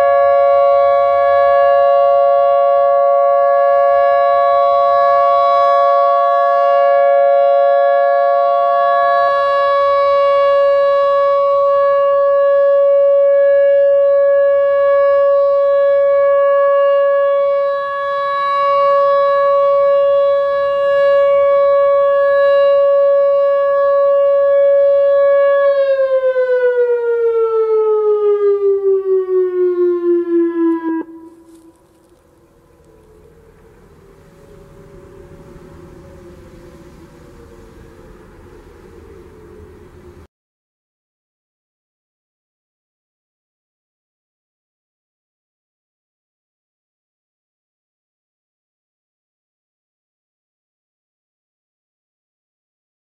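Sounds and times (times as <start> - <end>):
warning siren: 0.0 - 40.3.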